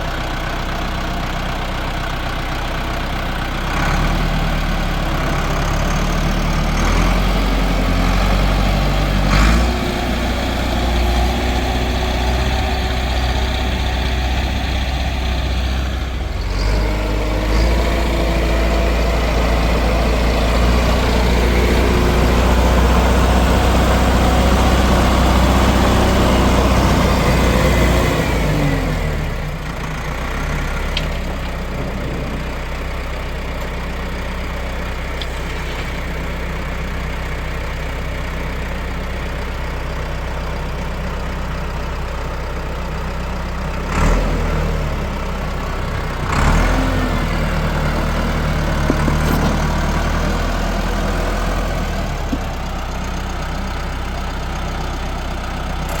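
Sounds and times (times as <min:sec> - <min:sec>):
tractor engine working under load: 0:00.0 - 0:56.0.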